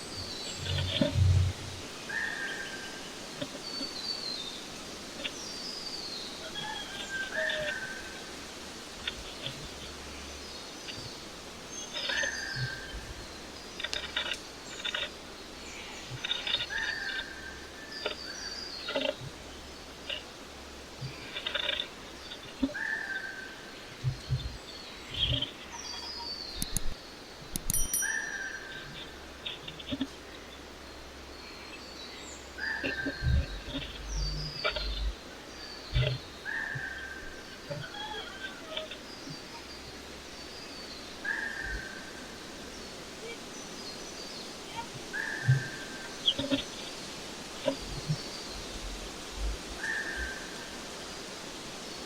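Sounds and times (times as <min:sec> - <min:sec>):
steady low hum: 0:00.0 - 0:03.0, 0:28.6 - 0:37.7, 0:44.7 - 0:50.8
small birds chirping: 0:00.0 - 0:52.0.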